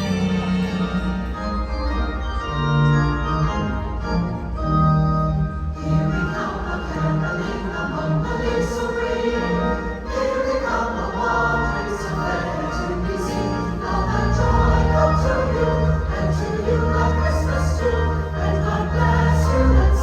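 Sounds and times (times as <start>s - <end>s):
instrumental accompaniment: 0.0s - 20.0s
choir singing: 5.8s - 20.0s.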